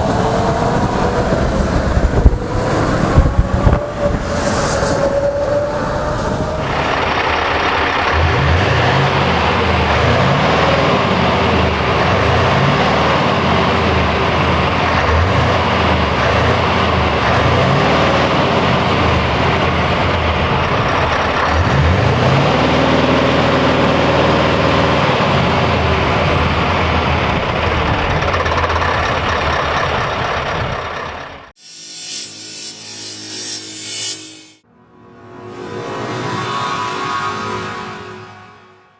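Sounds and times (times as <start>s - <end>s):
truck engine running: 5.0s - 31.6s.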